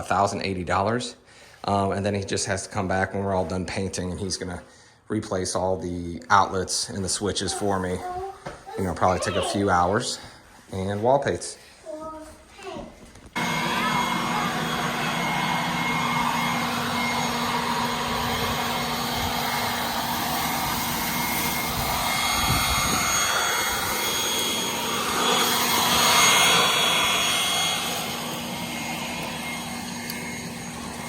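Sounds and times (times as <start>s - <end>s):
leaf blower whining: 13.3s - 31.0s.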